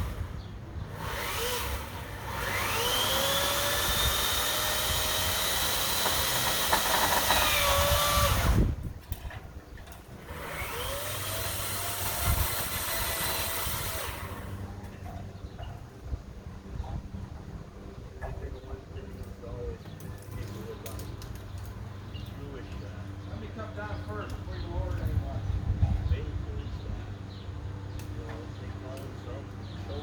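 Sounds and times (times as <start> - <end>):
power saw motor whining: 0.0 - 8.9, 9.9 - 15.0.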